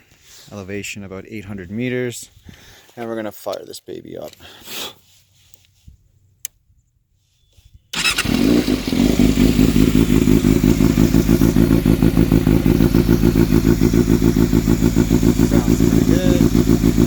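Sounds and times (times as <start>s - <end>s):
motorcycle engine starting and idling: 7.9s - 17.0s.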